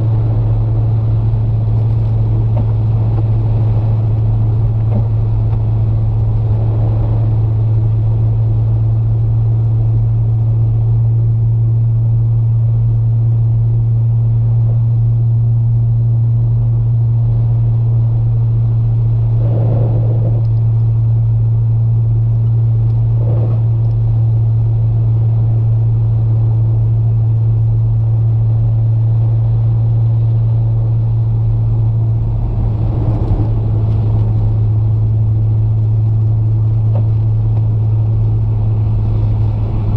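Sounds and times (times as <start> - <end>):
car engine drone in cabin: 0.0 - 39.9
road rumble: 0.0 - 39.9.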